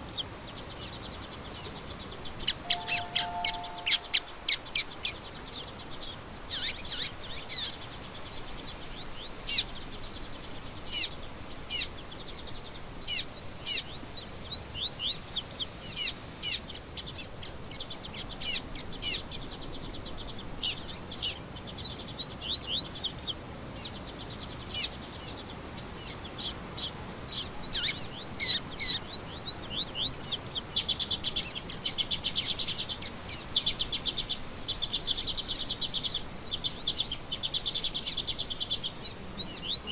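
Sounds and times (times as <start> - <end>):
songbirds chirping: 0.0 - 39.9
fast buzzy bird trill: 2.5 - 5.0.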